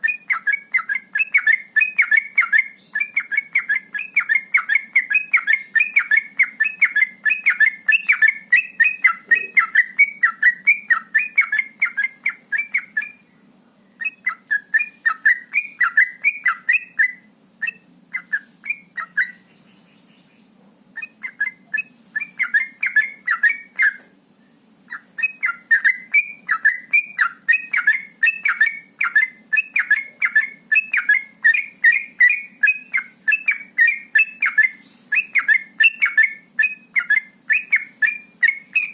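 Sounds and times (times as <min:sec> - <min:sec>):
bird singing whistled notes: 0:00.0 - 0:38.9.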